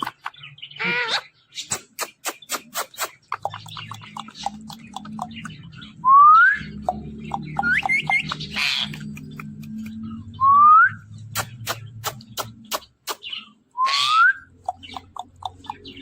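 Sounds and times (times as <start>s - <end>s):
parakeet clicks and chirps: 0.0s - 0.6s, 1.6s - 6.0s, 6.6s - 10.2s, 11.2s - 16.0s
parakeet harsh squawk: 0.8s - 3.2s, 8.2s - 9.0s, 13.2s - 15.1s.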